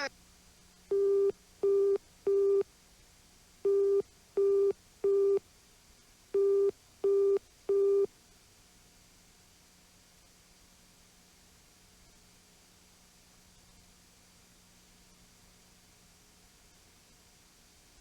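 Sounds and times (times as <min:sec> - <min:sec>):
telephone signal beeps: 0:03.7 - 0:05.4, 0:06.4 - 0:08.1.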